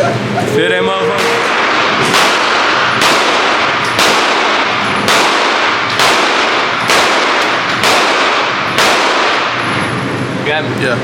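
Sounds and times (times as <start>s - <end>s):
gunshots echoing: 1.4s - 10.1s.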